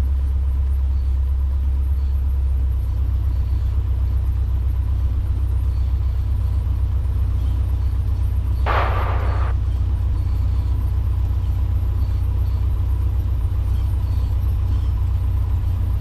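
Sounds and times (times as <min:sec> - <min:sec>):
airplane engine droning: 0:08.6 - 0:09.6
brief burst of noise: 0:08.7 - 0:09.5.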